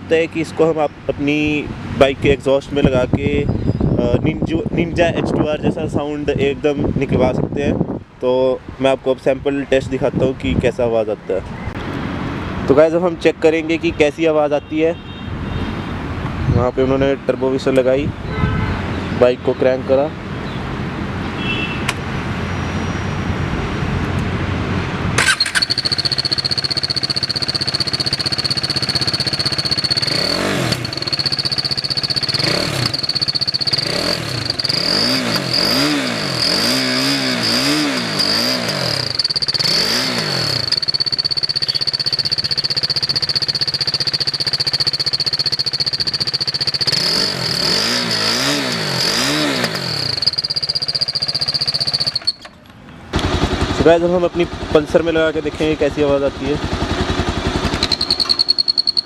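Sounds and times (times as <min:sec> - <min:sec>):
high whistle from exhaust: 0:21.4 - 0:23.3, 0:57.8 - 0:59.0
motorcycle engine revving: 0:23.3 - 0:59.0.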